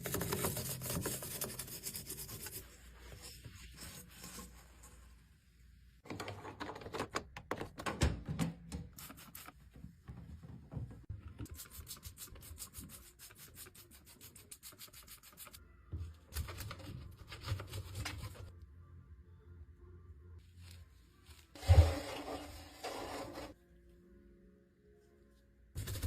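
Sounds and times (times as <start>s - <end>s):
scrubbing washing machine surfaces: 21.6s - 23.6s.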